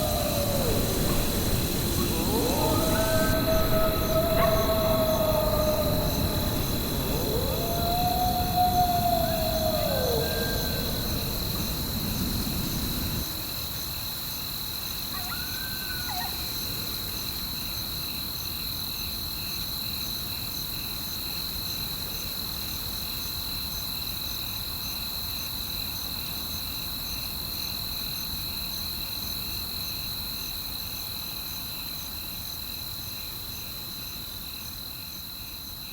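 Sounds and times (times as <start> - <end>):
wolf howling: 0.0 - 13.3, 15.2 - 16.6
low rumbling noise: 0.0 - 13.4
crickets chirping: 0.0 - 35.9.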